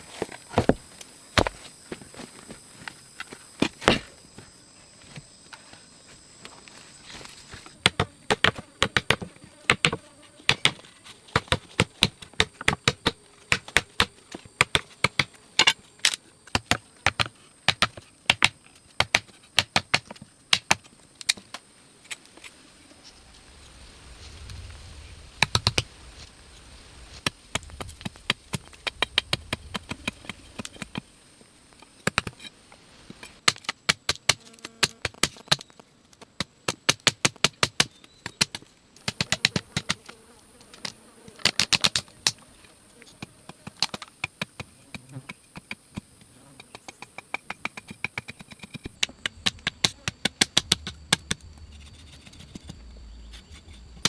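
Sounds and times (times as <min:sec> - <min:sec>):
sharp taps and knocks: 0:43.5 - 0:52.8
faint high-pitched whine: 0:48.0 - 0:54.0.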